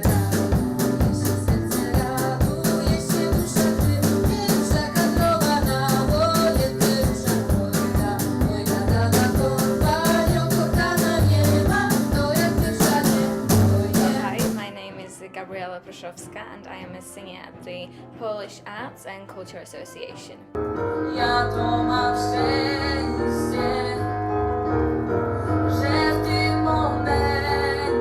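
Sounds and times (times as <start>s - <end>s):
upbeat music with drum beat: 0.0s - 14.7s.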